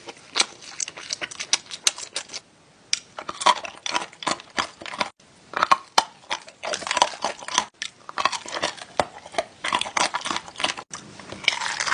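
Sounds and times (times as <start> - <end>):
crunchy food being chewed: 0.0 - 11.9.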